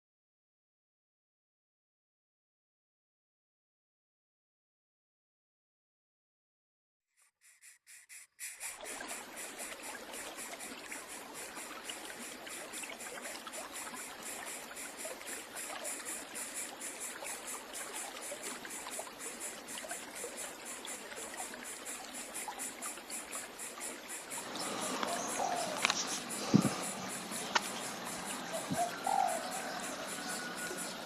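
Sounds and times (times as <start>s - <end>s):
flowing water rushing: 8.4s - 31.0s.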